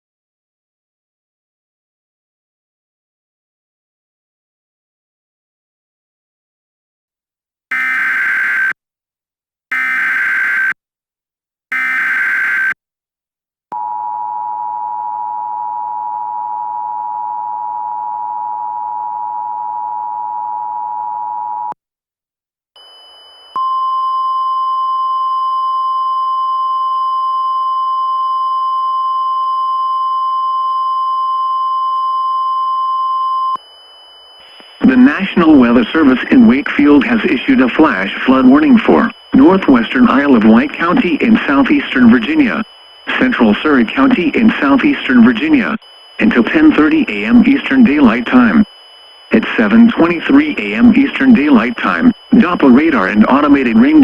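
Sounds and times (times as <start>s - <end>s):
screechy data bursts: 7.7s - 8.7s, 9.7s - 10.8s, 11.7s - 12.8s, 34.4s - 54.0s
high steady alert tone: 9.7s - 10.7s, 11.7s - 12.8s, 34.9s - 54.0s.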